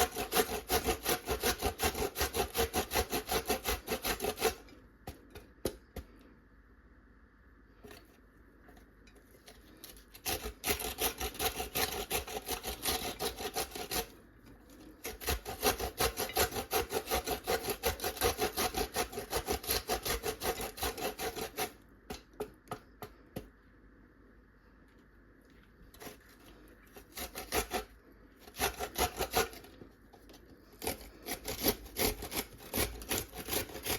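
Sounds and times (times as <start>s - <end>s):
rasping food preparation strokes: 0.0s - 6.2s, 9.2s - 21.8s, 25.8s - 33.9s.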